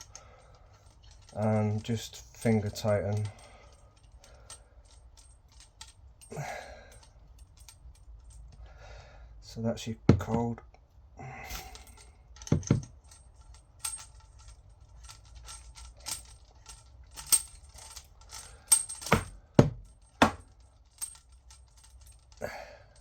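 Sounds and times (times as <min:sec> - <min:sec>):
metallic clicks and clinks: 0:00.0 - 0:08.6, 0:11.5 - 0:23.0
louder knocks: 0:19.1 - 0:20.4.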